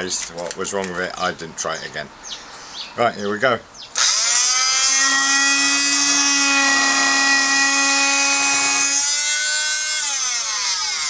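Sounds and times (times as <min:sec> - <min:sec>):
oscillating multi-tool whining: 0:04.0 - 0:11.0.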